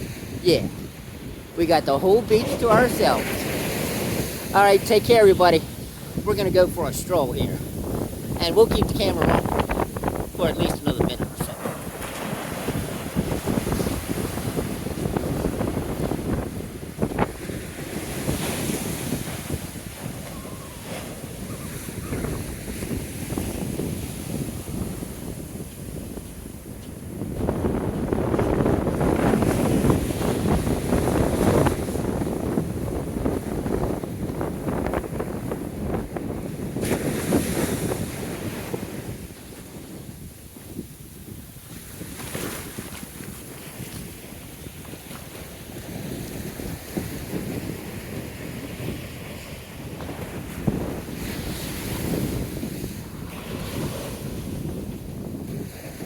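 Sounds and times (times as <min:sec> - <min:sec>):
ocean surf: 0:00.0 - 0:40.7, 0:41.5 - 0:56.0
wave washing up: 0:00.0 - 0:40.8, 0:41.5 - 0:56.0
wind buffeting microphone: 0:00.0 - 0:56.0.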